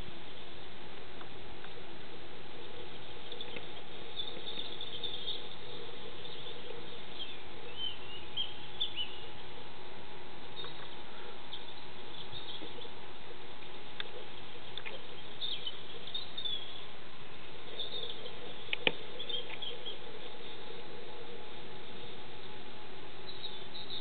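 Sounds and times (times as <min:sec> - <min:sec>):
background hiss: 0:00.0 - 0:24.0
birds chirping: 0:00.0 - 0:24.0
faint hum: 0:00.0 - 0:24.0.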